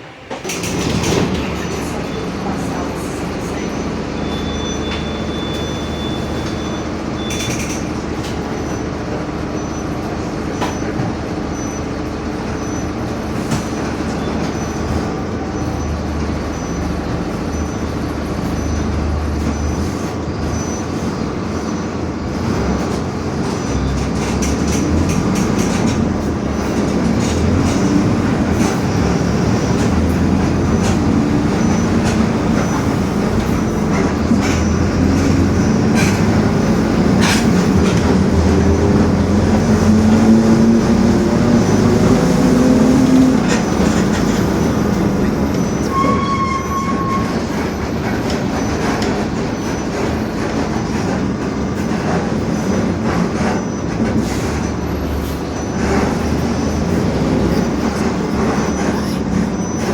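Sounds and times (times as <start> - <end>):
diesel bus drivetrain: 0.0 - 59.9
short beep: 3.7 - 7.7.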